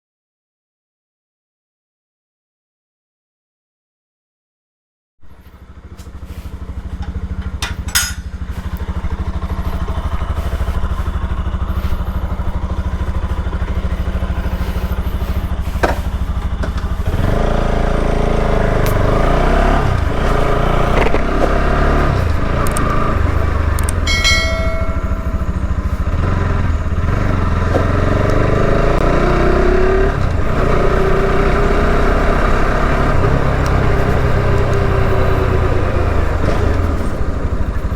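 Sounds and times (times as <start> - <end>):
motorcycle engine idling: 5.2 - 37.9.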